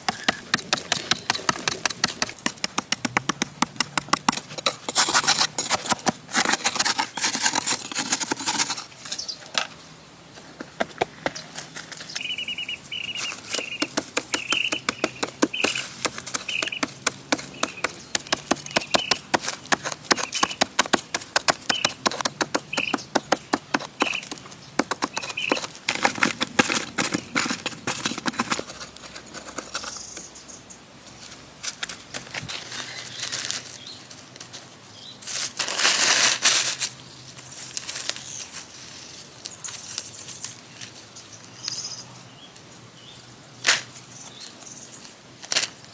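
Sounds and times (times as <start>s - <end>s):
fast sharp knocks: 0.0s - 4.6s, 13.6s - 28.5s
small bird chirping: 12.0s - 20.8s, 21.4s - 25.8s, 39.5s - 43.2s.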